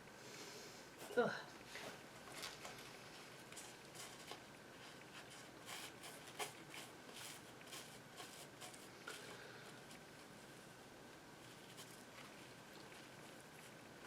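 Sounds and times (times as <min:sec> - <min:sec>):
small tools clicking and scratching: 0:03.5 - 0:10.0.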